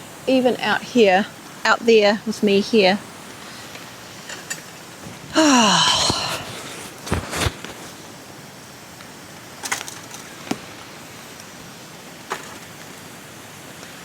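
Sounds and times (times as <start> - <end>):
rain hissing: 0.0 - 14.0
campfire cracking and popping: 3.2 - 14.0.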